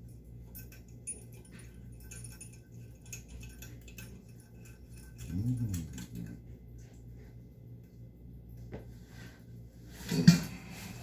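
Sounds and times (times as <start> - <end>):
steady low hum: 0.0 - 11.0
low grunt: 5.2 - 6.2.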